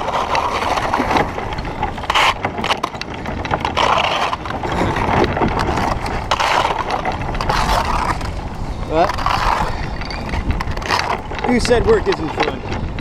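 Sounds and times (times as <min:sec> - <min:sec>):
paddle strokes splashing water: 0:00.0 - 0:11.8
wind rumble on microphone: 0:00.0 - 0:13.0
small clicks and knocks: 0:09.6 - 0:13.0.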